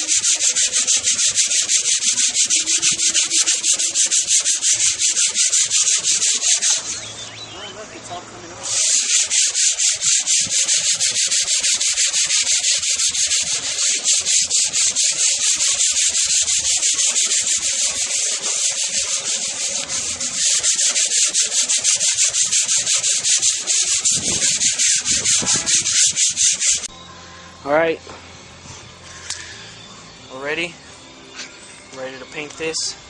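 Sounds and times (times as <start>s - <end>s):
sandpaper scraping metal: 0.0s - 7.1s, 8.6s - 26.9s.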